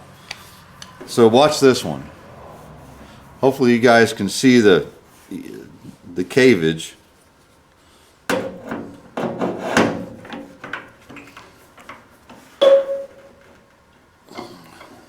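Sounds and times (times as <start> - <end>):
car panel ringing: 12.6 - 13.4
slide hammer metallic knocks: 12.6 - 13.6.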